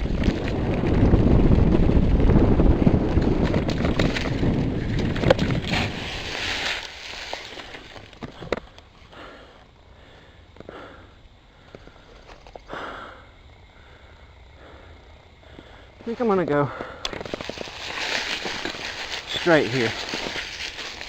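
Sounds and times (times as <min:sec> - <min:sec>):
wind rushing over microphone: 0:00.0 - 0:07.0
bike clicks and rattles: 0:00.0 - 0:09.0, 0:16.8 - 0:21.0
bike tyre noise: 0:00.0 - 0:10.9, 0:16.6 - 0:21.0
rider breathing: 0:06.0 - 0:21.0.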